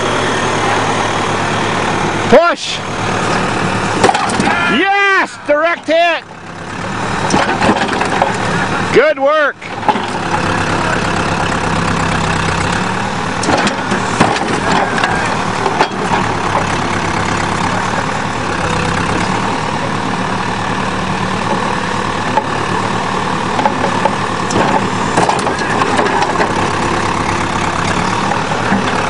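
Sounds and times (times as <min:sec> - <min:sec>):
backhoe diesel engine running: 0:00.0 - 0:29.0
sharp knocks of machine: 0:04.0 - 0:04.7.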